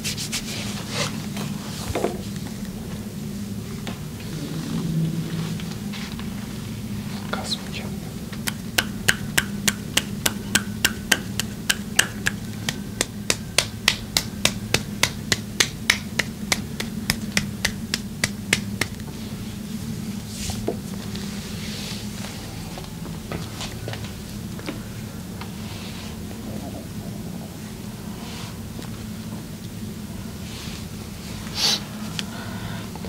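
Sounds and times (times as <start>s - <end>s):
massage hands slapping rhythmically: 8.4s - 19.1s.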